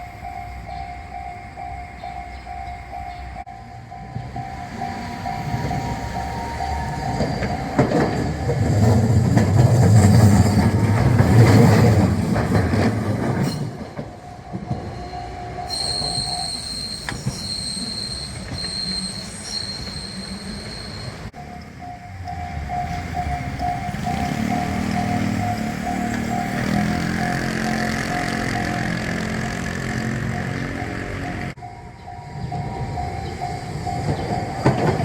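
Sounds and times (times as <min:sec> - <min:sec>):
level-crossing warning bell: 0:00.0 - 0:35.0
train rumbling on rails: 0:00.0 - 0:35.0
high thin wheel squeal: 0:15.1 - 0:21.3.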